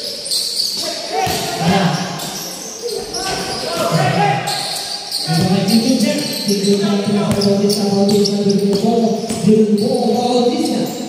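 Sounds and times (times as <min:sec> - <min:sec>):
murmur of voices: 0:00.0 - 0:11.0
basketball bouncing on hardwood: 0:06.7 - 0:09.5.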